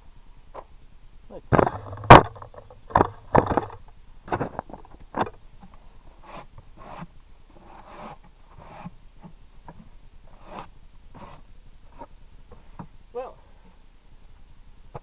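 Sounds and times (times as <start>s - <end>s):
wood scraping and rustling: 1.5s - 12.9s.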